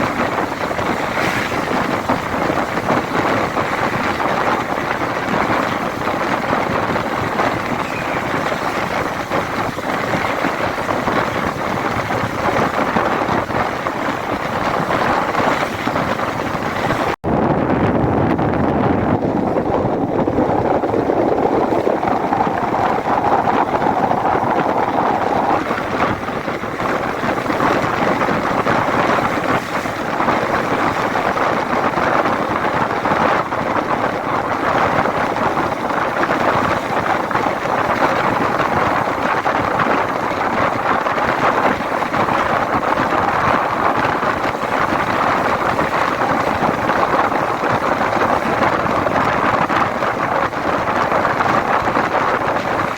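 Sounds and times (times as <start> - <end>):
vehicle and road noise: 0.0 - 11.0
wind on microphone: 0.0 - 52.9.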